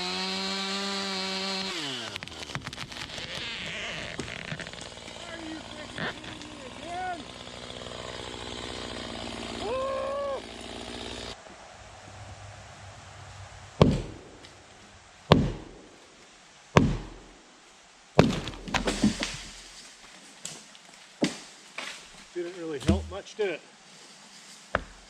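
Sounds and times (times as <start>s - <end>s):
heavy thunking blows: 13.7s - 14.6s, 15.3s - 15.9s, 16.8s - 17.3s, 22.8s - 23.2s
smaller knocks: 13.8s - 14.2s.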